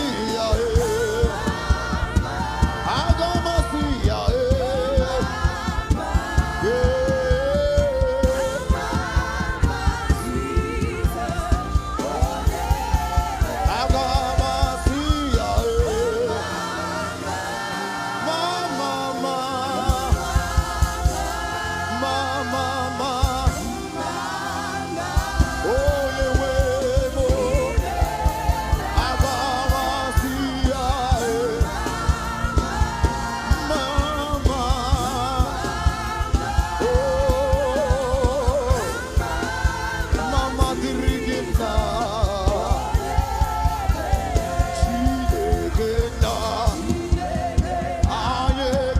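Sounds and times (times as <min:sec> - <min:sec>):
band with drum beat: 0:00.0 - 0:48.9
gospel singing: 0:00.0 - 0:48.9.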